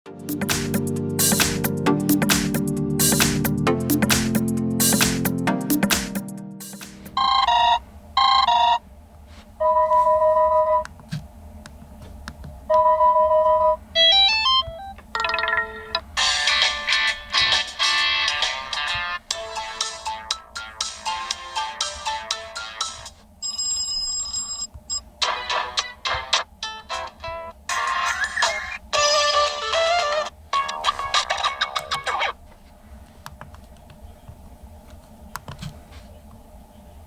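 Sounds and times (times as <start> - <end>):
electronic ringtone melody: 7.1 - 8.8, 9.6 - 10.8, 12.8 - 17.1
musical ringtone: 7.1 - 8.8, 9.6 - 10.8, 12.8 - 24.7
two-note electronic ring: 9.6 - 10.9.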